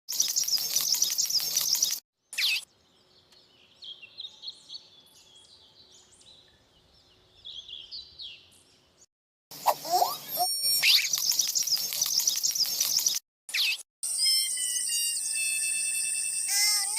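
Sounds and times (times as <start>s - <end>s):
small birds chirping: 0.1s - 13.8s.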